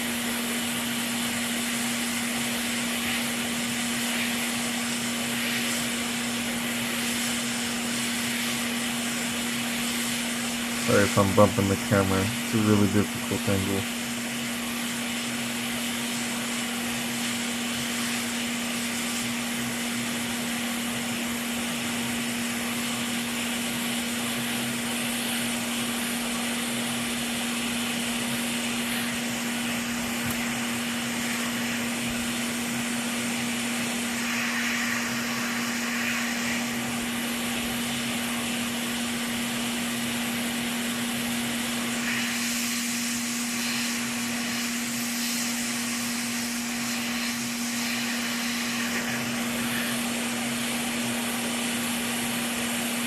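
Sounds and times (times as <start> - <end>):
hot-air tool blowing: 0.0 - 53.0.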